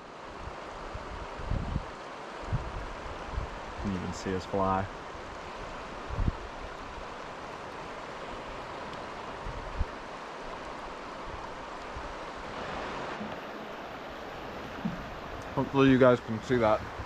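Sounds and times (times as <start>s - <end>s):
river water rushing: 0.0s - 17.0s
low bumps: 12.4s - 15.8s.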